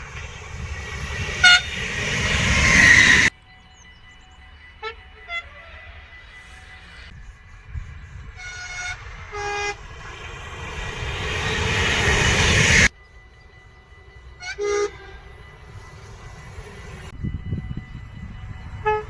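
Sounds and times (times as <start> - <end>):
train rushing noise: 0.0 - 19.0
train horn two-tone toots: 1.1 - 3.3, 4.8 - 6.8, 8.3 - 9.8, 14.4 - 15.2, 18.7 - 19.0.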